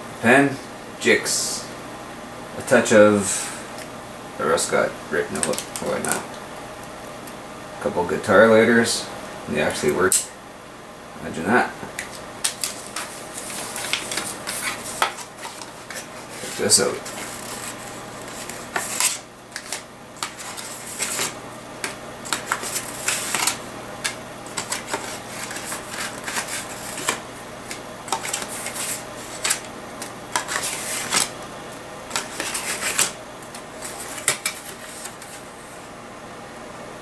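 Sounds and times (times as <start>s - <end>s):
packaging rustling: 12.0s - 31.4s, 32.1s - 35.4s.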